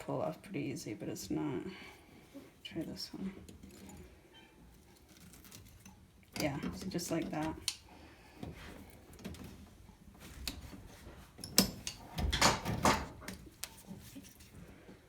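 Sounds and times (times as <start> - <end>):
pliers clicking on hose clamps: 6.4 - 7.9, 11.4 - 12.5.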